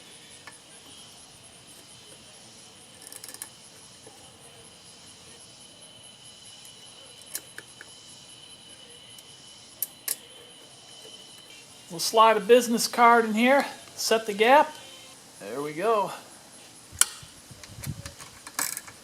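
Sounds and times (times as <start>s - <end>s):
steady high-pitched whine: 0.0s - 19.0s
metallic clicks and rattle: 3.0s - 4.2s, 17.0s - 19.0s.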